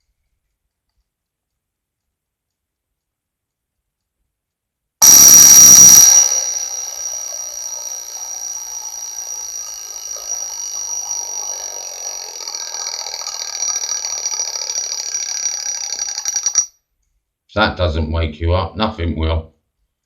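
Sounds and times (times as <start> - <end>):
alarm clock bells ringing: 5.0 - 16.7.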